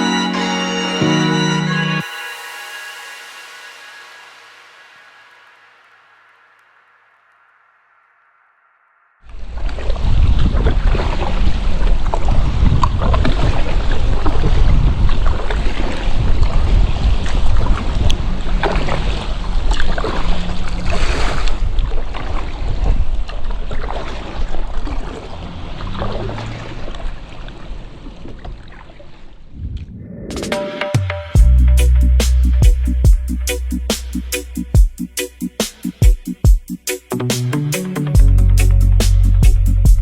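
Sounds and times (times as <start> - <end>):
water lapping around kayak: 9.2 - 29.6
wind buffeting microphone: 9.4 - 23.9, 29.4 - 30.6.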